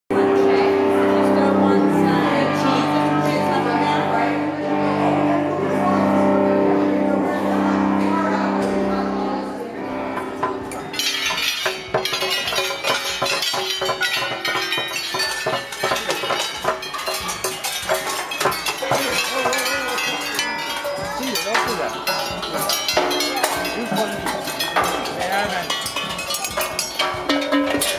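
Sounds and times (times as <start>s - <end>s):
old-time band music: 0.2s - 27.9s
metal sculpture clanking: 10.2s - 27.9s.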